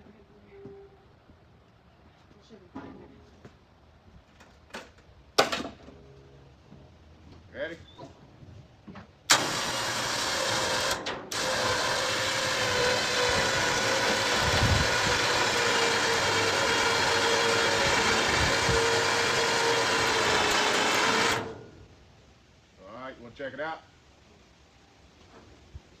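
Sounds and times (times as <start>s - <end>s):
motor whining: 9.3s - 21.8s.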